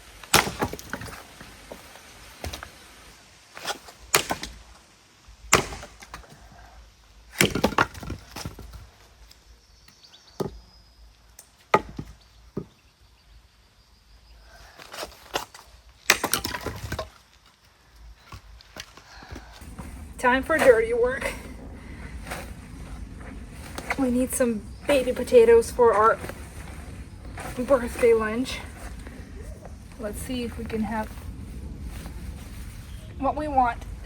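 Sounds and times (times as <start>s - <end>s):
wood chopping and splitting: 0.1s - 2.7s, 3.6s - 4.8s, 5.4s - 6.6s, 7.3s - 9.0s, 11.5s - 12.8s, 14.8s - 17.3s.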